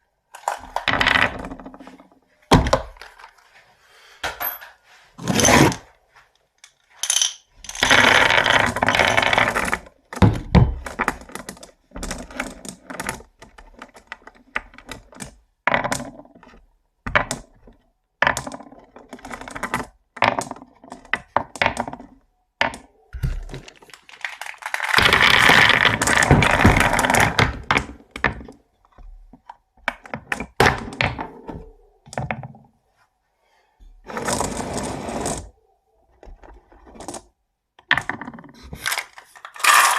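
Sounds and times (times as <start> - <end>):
many marbles rattling together: 7.0 - 9.6, 23.6 - 27.5, 38.8 - 39.9
marbles clicking on wooden track: 18.2 - 22.0, 23.6 - 28.5, 37.8 - 39.9.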